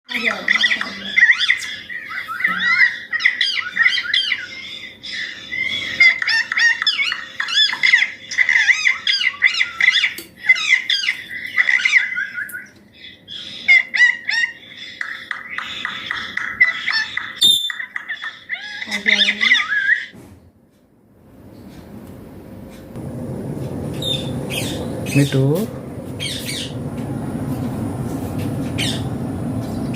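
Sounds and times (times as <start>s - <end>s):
parakeet chattering: 0.1s - 20.1s, 24.0s - 25.6s, 26.2s - 26.8s, 28.8s - 29.1s.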